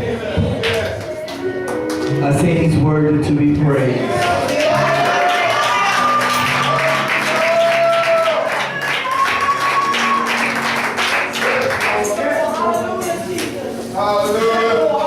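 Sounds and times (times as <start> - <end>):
upbeat gospel music: 0.0 - 15.0.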